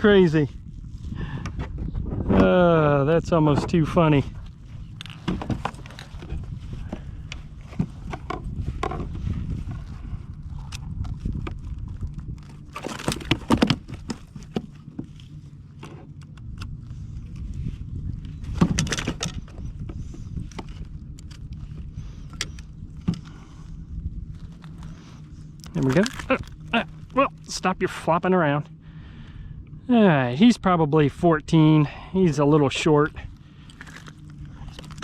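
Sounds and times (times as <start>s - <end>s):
low rumble: 0.0s - 35.0s
fishing gear clicking and knocking: 4.9s - 9.2s, 10.6s - 15.2s, 18.5s - 21.6s, 25.6s - 27.5s, 33.6s - 35.0s.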